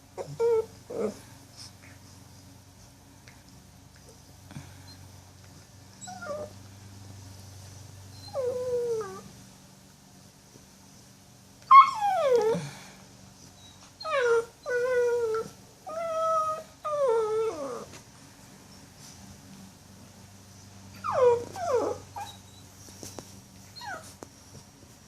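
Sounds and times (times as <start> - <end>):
puppy whimpering: 0.2 - 1.2, 6.0 - 6.6, 8.1 - 9.3, 11.7 - 12.7, 13.6 - 17.9, 21.0 - 22.7, 23.8 - 24.1.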